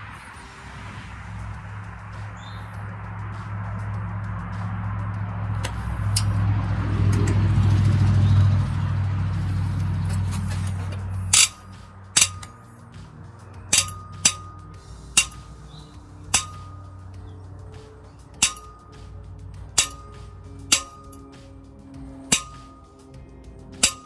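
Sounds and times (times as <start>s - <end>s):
wrench clinking on bolt: 10.1s - 11.6s, 12.2s - 12.6s, 13.7s - 14.6s, 15.2s - 15.5s, 16.3s - 16.8s, 18.2s - 18.9s, 19.8s - 21.4s, 23.8s - 24.0s.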